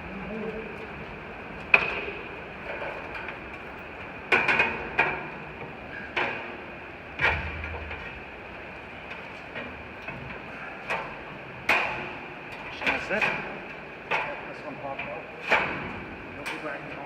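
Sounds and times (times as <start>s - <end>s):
sharp metallic knocks: 7.2s - 8.3s.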